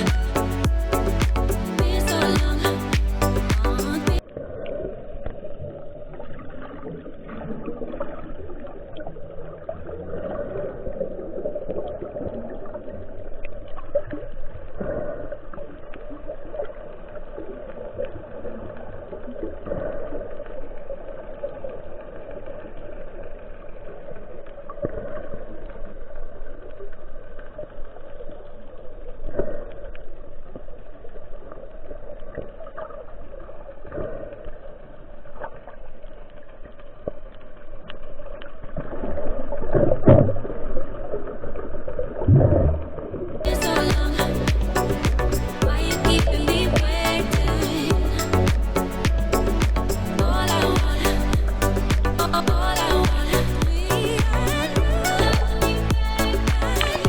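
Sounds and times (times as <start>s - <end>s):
muffled water sloshing: 42.2s - 57.0s.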